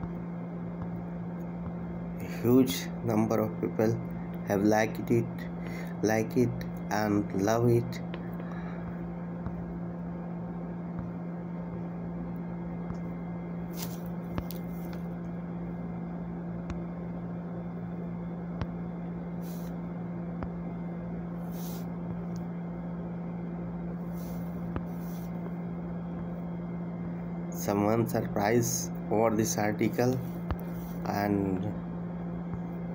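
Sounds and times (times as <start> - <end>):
steady low hum: 0.0 - 32.9
background hiss: 13.7 - 15.0, 19.4 - 19.8, 21.4 - 21.9
short soft hisses: 13.7 - 15.0, 19.4 - 19.8, 21.4 - 21.9.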